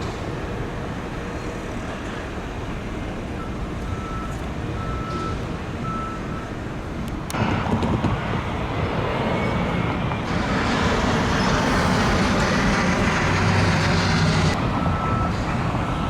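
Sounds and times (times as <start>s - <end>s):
heavy vehicle engine running: 0.0s - 16.0s
passing traffic: 0.0s - 16.0s
reversing alarm beeping: 3.4s - 6.6s, 10.8s - 15.6s.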